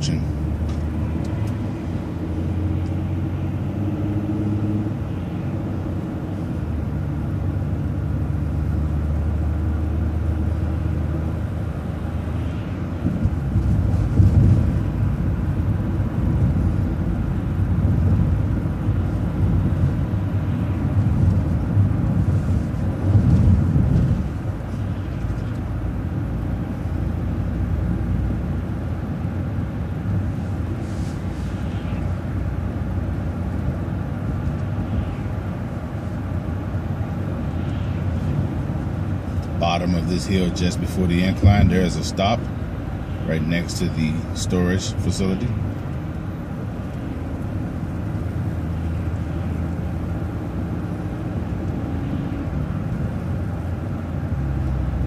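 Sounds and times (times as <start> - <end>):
bus engine running: 0.0 - 55.0
road noise: 0.0 - 55.0.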